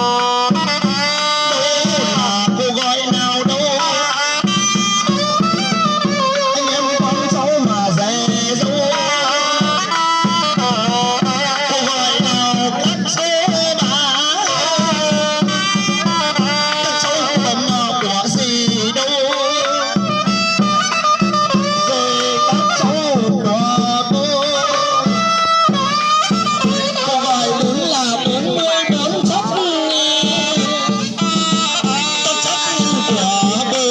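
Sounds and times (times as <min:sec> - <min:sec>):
steady drum beat: 0:00.0 - 0:33.9
wavering band melody: 0:24.4 - 0:33.9.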